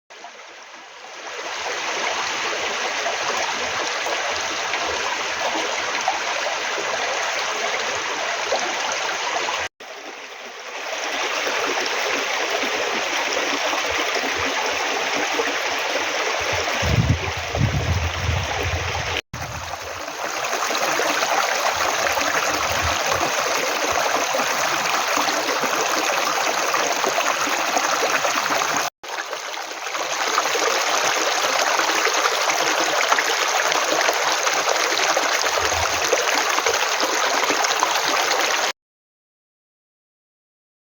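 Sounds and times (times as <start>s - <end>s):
stream rushing over rocks: 1.2s - 38.7s
low rumble: 16.4s - 19.2s.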